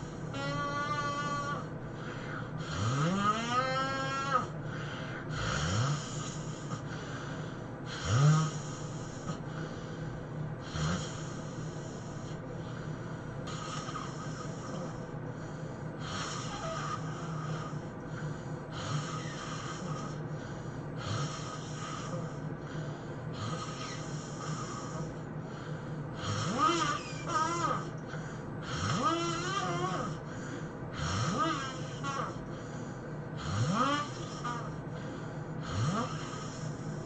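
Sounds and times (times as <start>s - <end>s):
person snoring heavily: 0.0s - 10.0s, 10.6s - 25.2s, 26.1s - 32.6s, 33.3s - 37.0s
loud snort: 2.6s - 4.5s, 5.3s - 6.9s, 7.9s - 9.5s, 10.6s - 12.4s, 13.5s - 15.1s, 16.0s - 17.8s, 18.7s - 20.3s, 21.0s - 22.3s, 23.4s - 25.2s, 26.2s - 28.0s, 28.6s - 30.3s, 30.9s - 32.5s, 33.4s - 34.7s, 35.6s - 37.0s.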